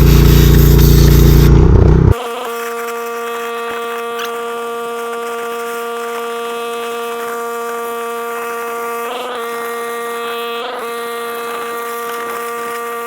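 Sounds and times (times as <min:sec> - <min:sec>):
steady machine hum: 0:00.0 - 0:02.2.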